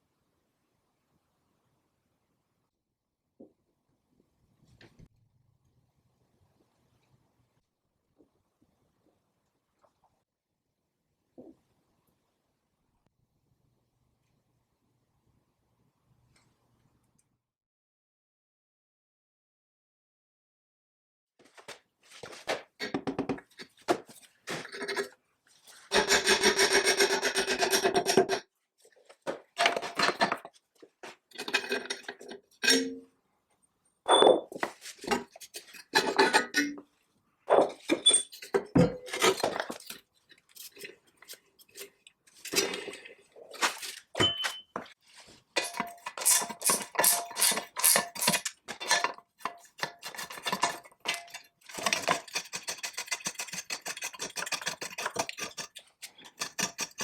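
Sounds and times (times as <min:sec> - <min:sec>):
metal tools clinking and scraping: 0:31.3 - 0:33.0, 0:37.7 - 0:42.7, 0:43.7 - 0:45.0, 0:45.6 - 0:54.1.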